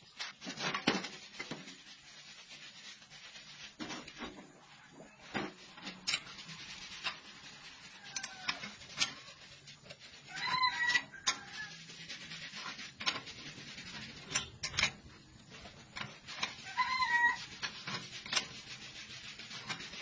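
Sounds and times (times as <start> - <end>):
metal scraping in bending tool: 5.2 - 20.0.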